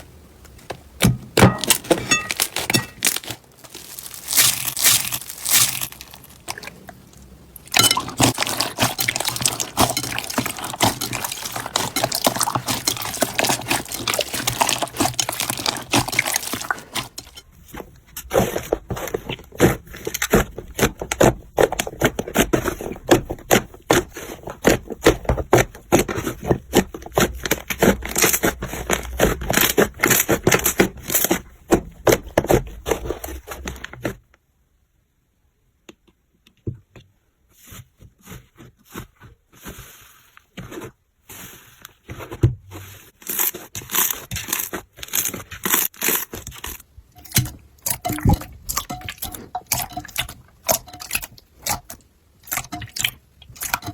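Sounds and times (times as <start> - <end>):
slime crackling and popping: 1.4 - 17.4, 43.2 - 53.9.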